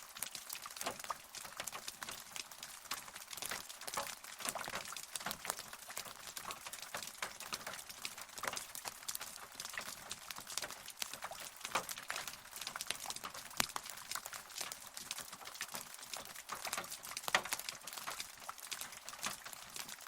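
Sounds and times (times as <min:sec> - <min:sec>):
rain drops pattering: 0:00.0 - 0:20.0.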